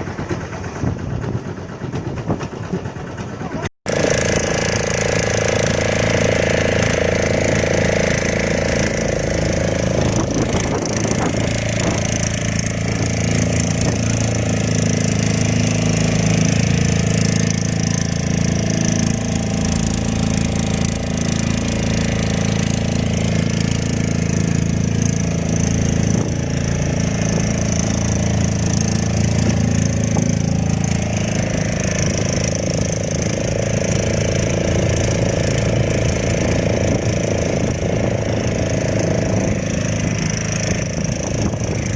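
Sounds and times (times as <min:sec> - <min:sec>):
boat motor running: 0:00.0 - 0:41.9.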